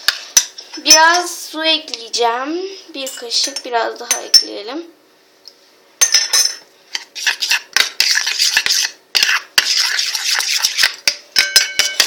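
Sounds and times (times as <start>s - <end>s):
spoon stirring slime in container: 7.0s - 12.0s.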